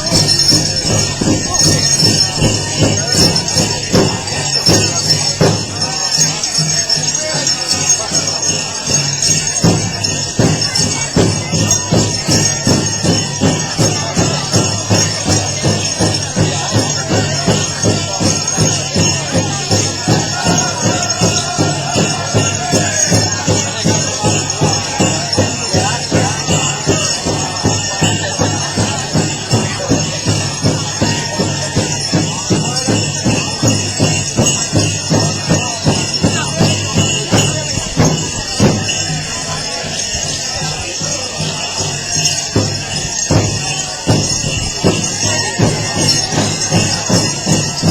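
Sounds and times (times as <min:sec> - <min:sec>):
jingling bells: 0:00.0 - 0:47.9
drum struck in unison: 0:09.5 - 0:38.9.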